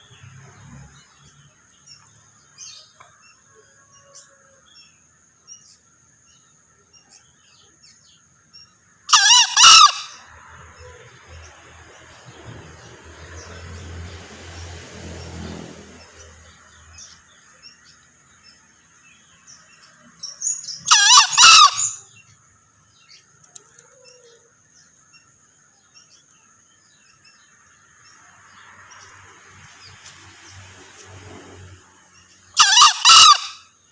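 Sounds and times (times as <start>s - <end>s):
junglefowl crowing: 9.1s - 11.1s, 20.2s - 22.2s, 32.6s - 33.7s.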